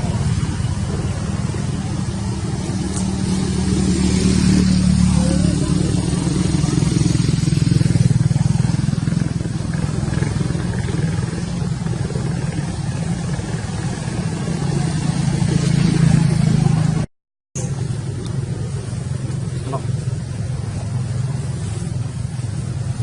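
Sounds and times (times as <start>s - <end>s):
engine running with low hum: 0.0s - 23.0s.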